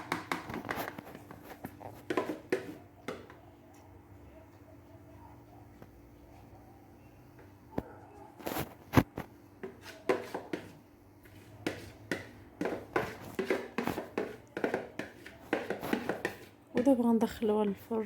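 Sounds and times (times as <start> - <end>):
batter being scraped: 9.6 - 16.6
utensils knocking against bowl: 11.7 - 16.9.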